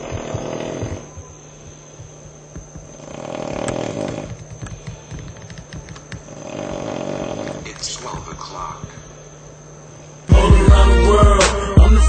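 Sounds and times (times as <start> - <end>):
person snoring: 0.0 - 1.2, 2.9 - 4.7, 6.3 - 8.1.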